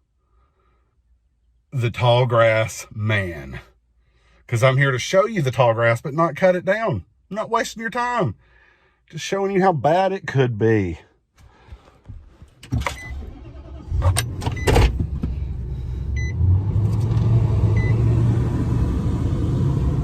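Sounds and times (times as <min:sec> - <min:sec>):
car engine starting and running: 0:12.4 - 0:20.0.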